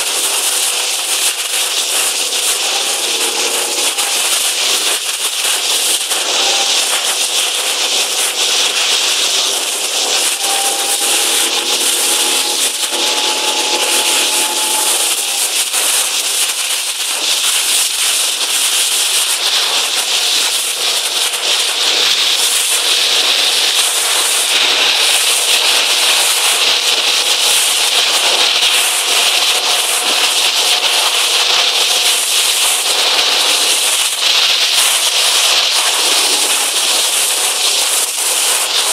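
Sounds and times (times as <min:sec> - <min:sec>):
faint hum: 0:01.9 - 0:05.2, 0:09.6 - 0:15.9.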